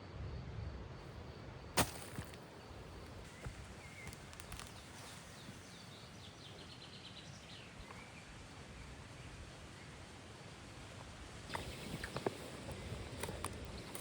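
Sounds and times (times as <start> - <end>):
songbird singing: 1.0 - 10.5, 11.4 - 14.0.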